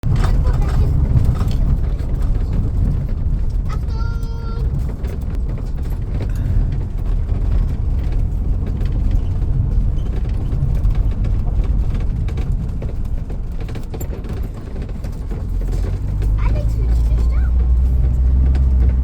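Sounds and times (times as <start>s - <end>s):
faint rattles: 0.0s - 19.0s
vehicle road and engine rumble: 0.0s - 19.0s.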